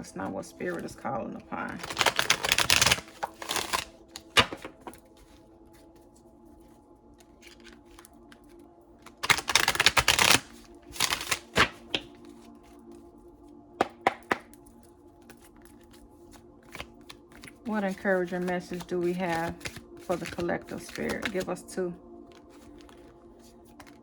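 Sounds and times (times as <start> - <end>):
soft background music: 0.0 - 24.0
card taps: 1.7 - 5.1, 11.0 - 12.2, 13.8 - 14.6
cards being riffle shuffled: 1.7 - 6.0, 7.2 - 12.5, 13.8 - 21.6, 22.3 - 24.0.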